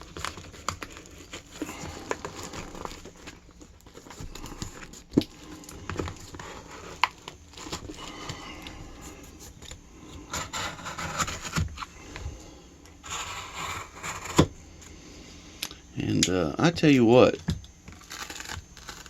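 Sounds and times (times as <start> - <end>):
cardboard scraping and rustling: 0.0 - 12.4, 13.0 - 14.6.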